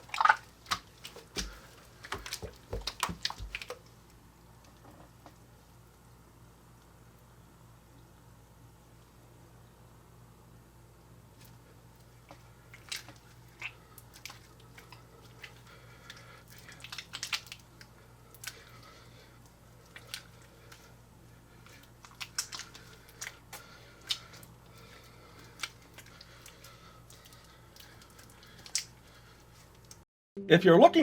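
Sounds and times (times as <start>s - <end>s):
slime squelching with wet pops: 0.0s - 4.2s, 11.4s - 30.0s
faint steady hum: 0.0s - 31.0s.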